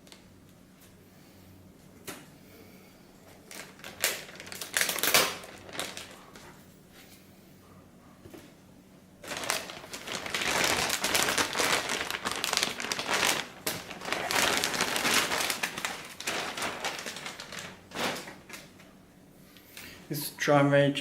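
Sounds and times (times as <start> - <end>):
plastic packaging crinkling: 3.4 - 6.5, 9.2 - 19.0.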